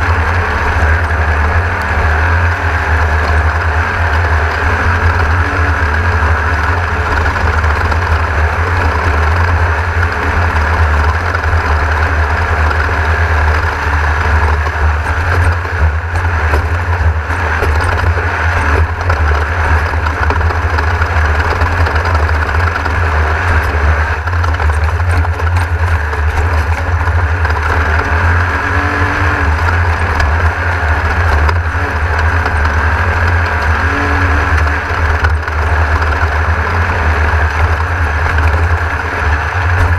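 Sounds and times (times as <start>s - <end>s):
race car engine and driving noise: 0.0s - 39.9s.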